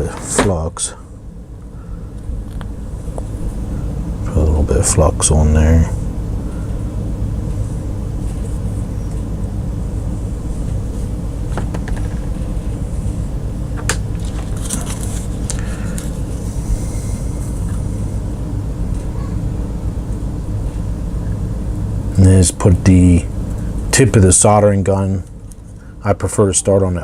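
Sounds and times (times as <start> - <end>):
low electrical hum: 0.0 - 27.0
rustle of wires: 14.1 - 16.7.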